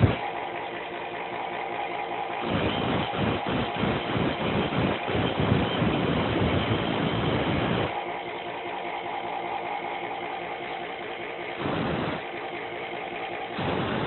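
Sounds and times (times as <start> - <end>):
grinder motor humming: 0.0 - 14.0
power grinder grinding metal: 0.0 - 14.0.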